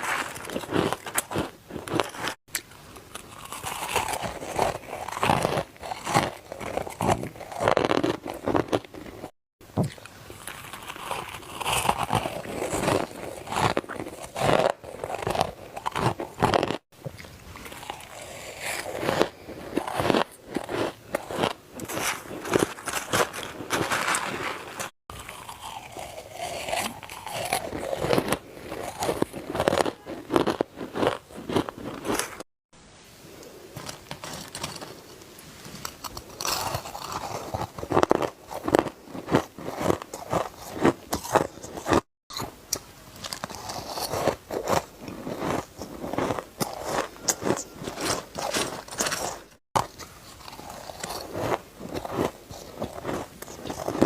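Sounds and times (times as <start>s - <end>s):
ice being chewed: 0.0s - 32.4s, 33.8s - 54.0s.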